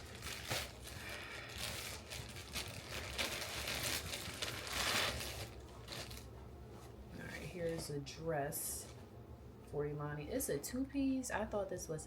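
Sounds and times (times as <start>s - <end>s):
plastic packaging crinkling: 0.0s - 6.4s.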